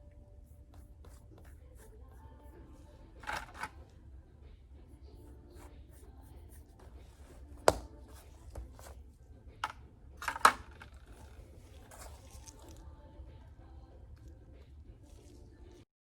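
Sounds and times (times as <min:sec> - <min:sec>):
faint steady hum: 0:00.0 - 0:15.9
rustling: 0:10.8 - 0:13.0.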